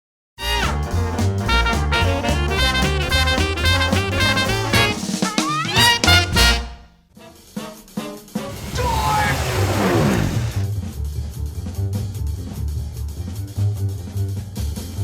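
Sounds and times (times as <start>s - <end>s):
upbeat swing music: 0.4s - 9.3s
quick rising slide: 8.4s - 10.8s.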